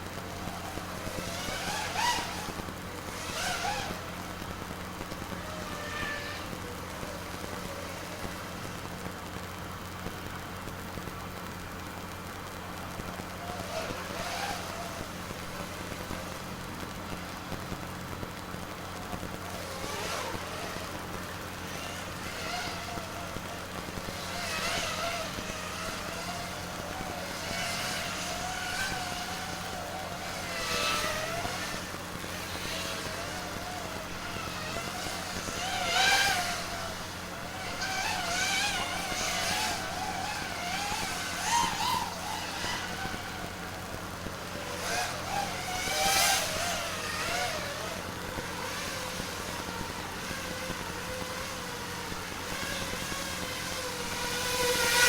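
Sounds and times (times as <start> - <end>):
quadcopter motors whining: 0.0 - 55.0.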